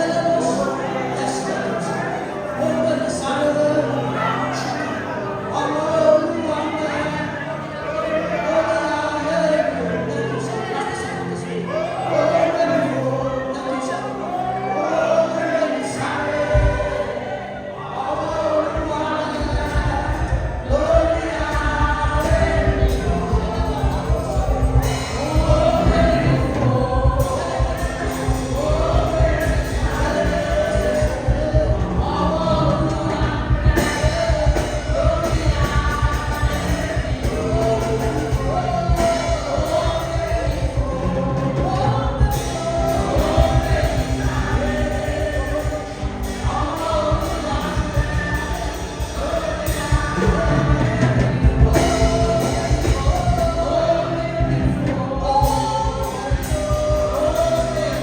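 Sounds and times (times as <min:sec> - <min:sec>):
gospel singers: 0:00.0 - 0:58.0
heavy bass: 0:18.0 - 0:58.0
band with driving beat: 0:18.8 - 0:58.0.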